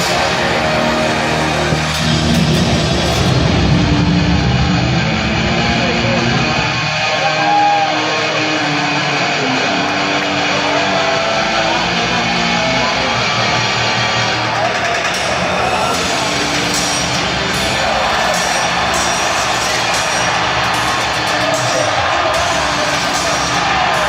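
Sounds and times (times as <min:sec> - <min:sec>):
loud rock music with electric guitar: 0:00.0 - 0:24.0.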